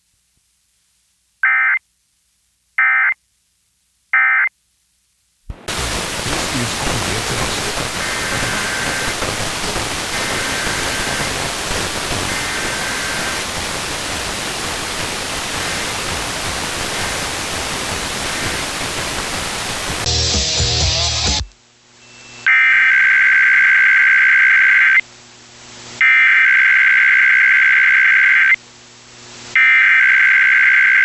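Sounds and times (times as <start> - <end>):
radio static hiss: 5.5 - 22.0, 24.8 - 26.0, 27.8 - 29.6
harsh buzzing sound: 5.5 - 22.6
faint warbling data bursts: 5.6 - 14.2.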